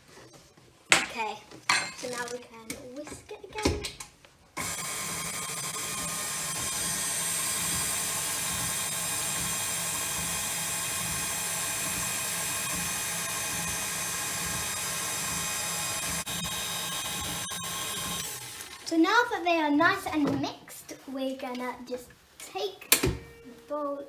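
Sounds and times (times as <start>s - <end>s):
electric mixer beating batter: 4.6s - 19.0s.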